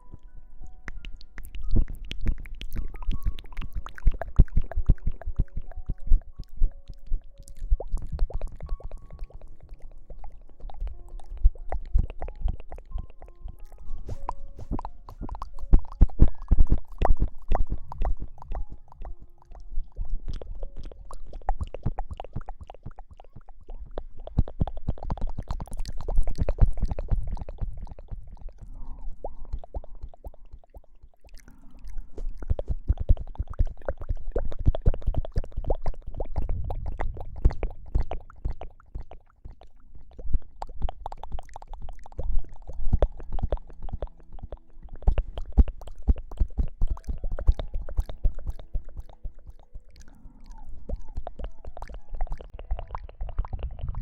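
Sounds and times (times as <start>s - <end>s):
soft low thumps: 0.9s - 30.3s, 31.9s - 49.4s
hair rubbed at microphone: 13.8s - 15.3s.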